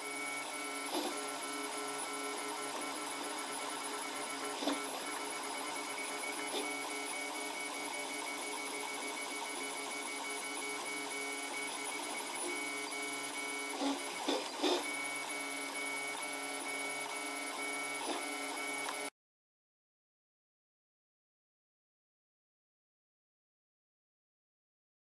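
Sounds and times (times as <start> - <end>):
three d printer motors whining: 0.0 - 19.1.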